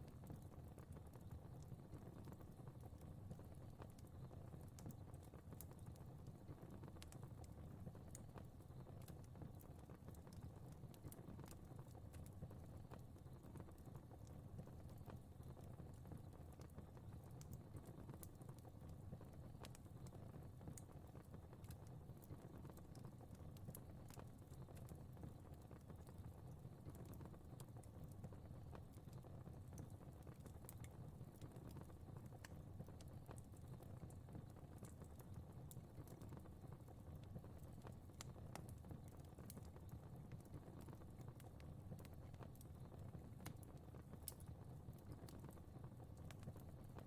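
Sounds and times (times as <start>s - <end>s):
low rumble of flames: 0.0s - 47.0s
fire crackling: 0.1s - 47.0s.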